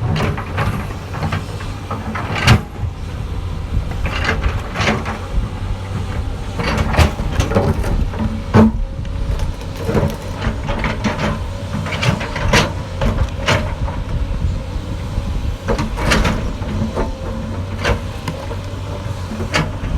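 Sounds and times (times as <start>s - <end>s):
diesel engine running: 0.0s - 19.9s
excavator bucket clanking and scraping: 0.0s - 19.9s.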